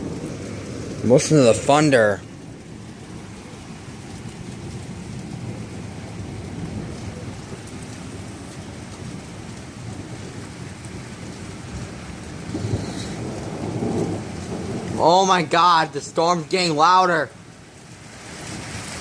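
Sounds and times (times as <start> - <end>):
low rumble of thunder: 0.0 - 16.2, 17.3 - 19.0
heavy rain pouring: 0.0 - 19.0.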